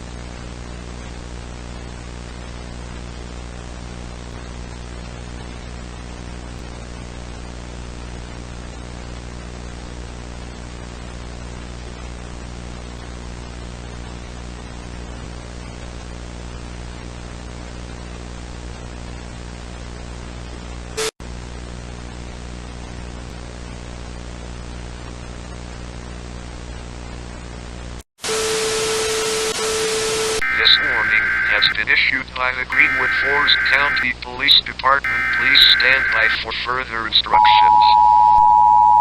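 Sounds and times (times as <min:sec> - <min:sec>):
broadcast static hiss: 0:30.2 - 0:37.3
low buzzing hum: 0:30.4 - 0:31.8, 0:32.7 - 0:34.0, 0:35.1 - 0:36.4
loud crackle: 0:32.7 - 0:34.0.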